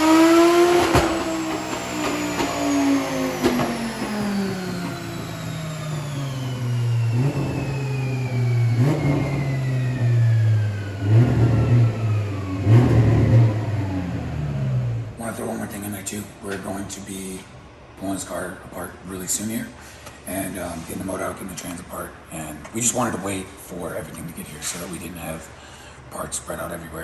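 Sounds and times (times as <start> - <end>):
high whine sliding down: 0.0 - 15.4
car engine winding down: 0.0 - 15.6.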